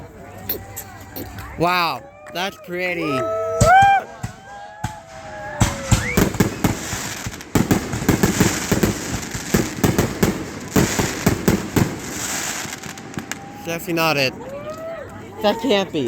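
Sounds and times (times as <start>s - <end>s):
fireworks bangs and crackling: 3.6s - 14.5s.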